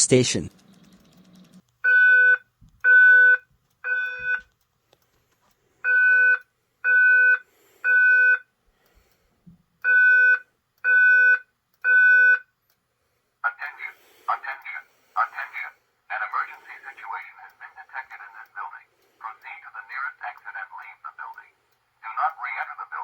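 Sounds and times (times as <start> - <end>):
fire alarm beeps: 0.5 - 4.5, 5.8 - 8.5, 9.8 - 12.5.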